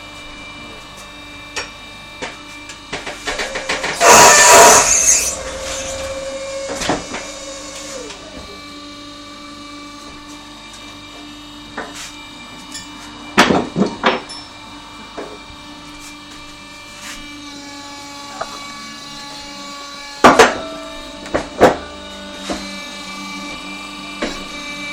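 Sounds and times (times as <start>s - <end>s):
tyre changer motor hum: 1.4s - 11.2s.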